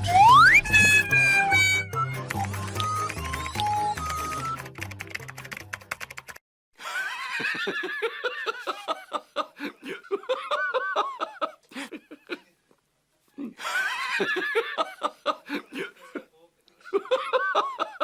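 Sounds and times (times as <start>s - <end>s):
person laughing heartily: 6.8s - 12.5s, 13.4s - 16.2s, 16.8s - 18.0s.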